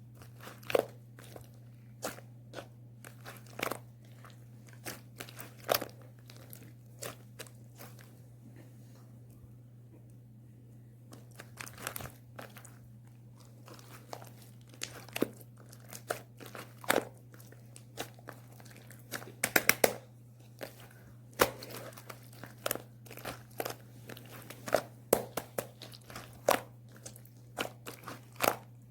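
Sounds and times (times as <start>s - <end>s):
slime clicking and popping: 19.4s - 20.0s.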